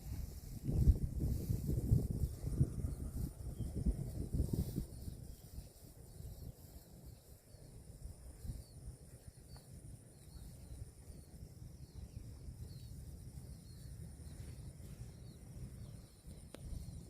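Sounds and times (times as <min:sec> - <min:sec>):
high insect drone: 0:00.0 - 0:17.0
faint high chirps: 0:04.6 - 0:17.0.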